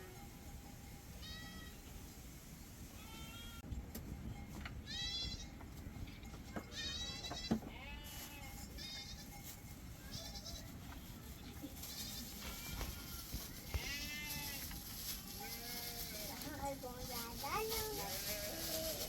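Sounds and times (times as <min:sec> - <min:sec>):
young livestock bleating: 0:06.7 - 0:09.3, 0:10.1 - 0:10.8, 0:11.7 - 0:14.8, 0:17.7 - 0:19.0.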